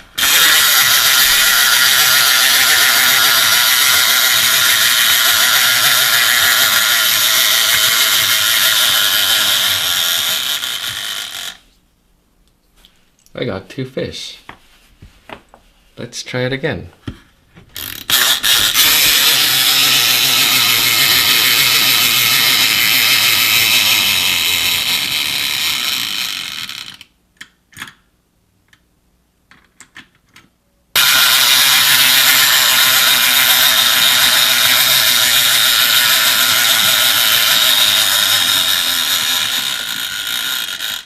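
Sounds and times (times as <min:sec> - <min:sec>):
clockwork toy motor whirring: 0:00.0 - 0:11.6, 0:17.8 - 0:27.1, 0:31.0 - 0:41.0.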